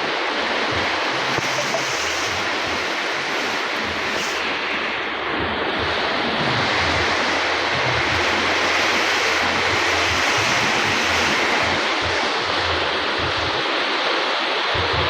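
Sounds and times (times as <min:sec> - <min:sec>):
heavy rain falling: 0:00.0 - 0:15.0
low rumble of wind: 0:00.0 - 0:15.0.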